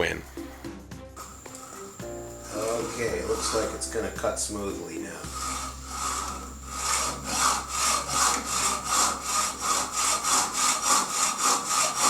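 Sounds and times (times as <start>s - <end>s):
hand saw cutting rod: 2.5s - 12.0s.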